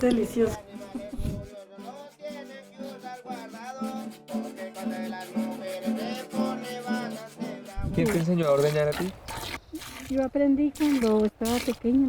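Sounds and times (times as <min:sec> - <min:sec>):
plucked string music: 0:00.0 - 0:09.1.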